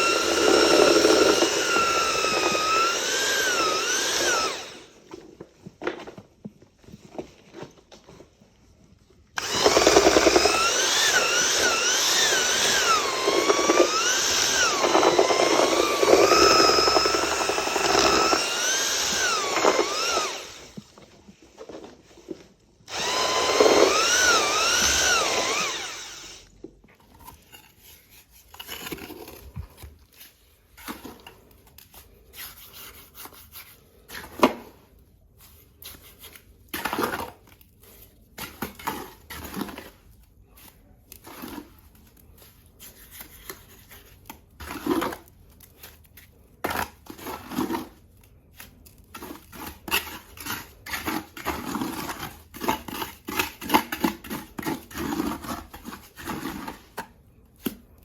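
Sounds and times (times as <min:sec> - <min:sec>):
power tool whining: 0:00.0 - 0:05.0, 0:09.4 - 0:21.0, 0:22.9 - 0:26.6.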